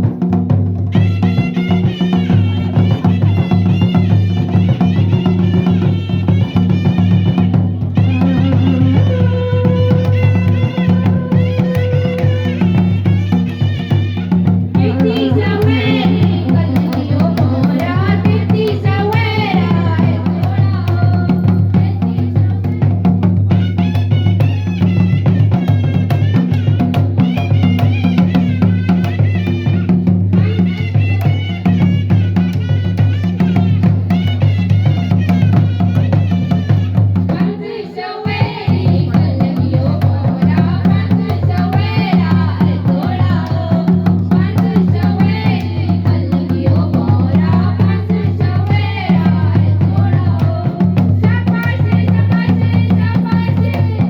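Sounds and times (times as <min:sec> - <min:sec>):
drums: 0:00.0 - 0:54.0
folk music: 0:00.8 - 0:20.0.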